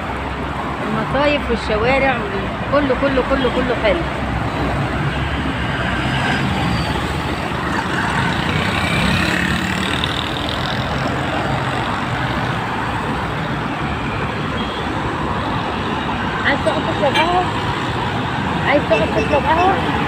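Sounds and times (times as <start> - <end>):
street traffic: 0.0 - 20.0.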